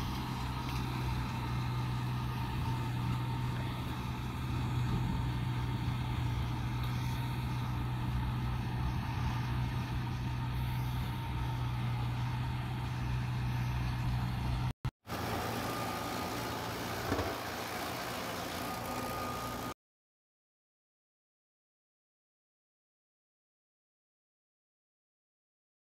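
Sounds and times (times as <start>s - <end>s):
tractor engine running: 0.0s - 19.8s.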